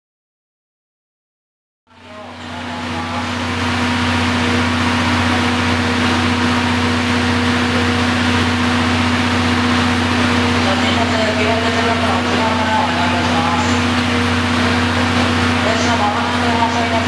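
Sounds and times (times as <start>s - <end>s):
locomotive engine idling: 2.0s - 17.0s.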